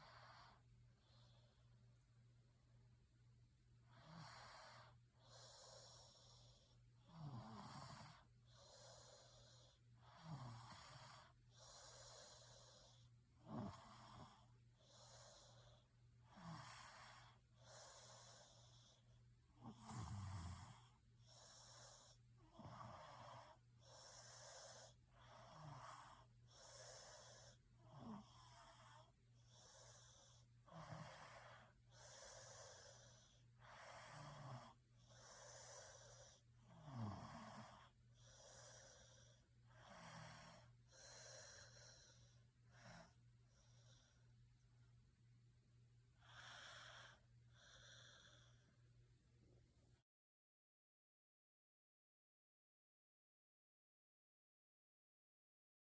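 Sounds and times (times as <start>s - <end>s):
person snoring: 3.9s - 19.0s, 19.6s - 44.2s, 46.2s - 48.7s.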